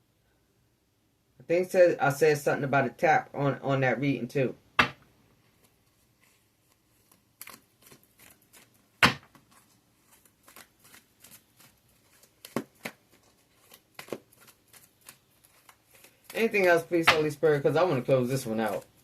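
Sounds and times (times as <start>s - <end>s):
cards being shuffled: 5.5s - 19.0s
cards slapping: 6.7s - 19.0s.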